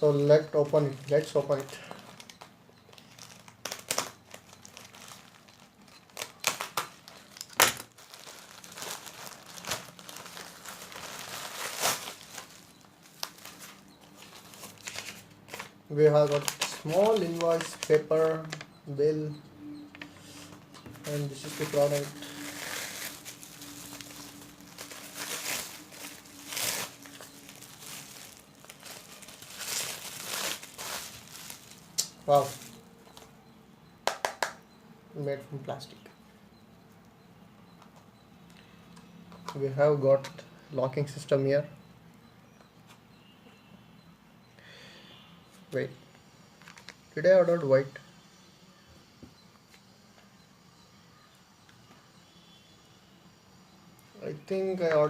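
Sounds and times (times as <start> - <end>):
packaging crinkling and rustling: 0.6 - 18.7, 20.9 - 33.3
packaging snapping: 1.4 - 18.7, 21.0 - 33.3.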